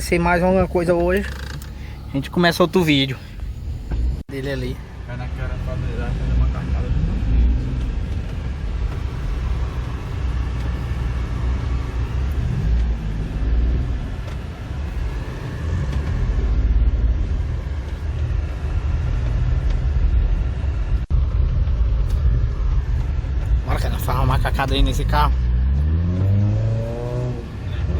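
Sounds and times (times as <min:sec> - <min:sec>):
car engine rumbling: 0:00.0 - 0:27.9.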